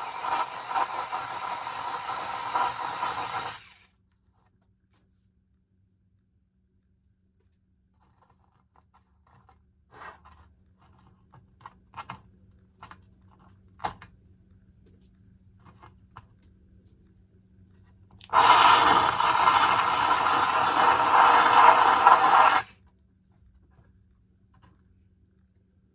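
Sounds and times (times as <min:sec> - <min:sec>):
small power tool running: 0:00.0 - 0:03.8, 0:18.3 - 0:22.7.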